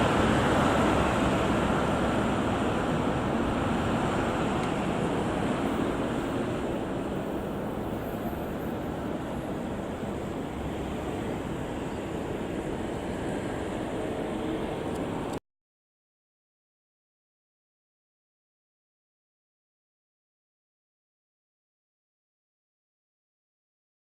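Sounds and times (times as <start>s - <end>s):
electric train rumbling on track: 0.0s - 15.4s.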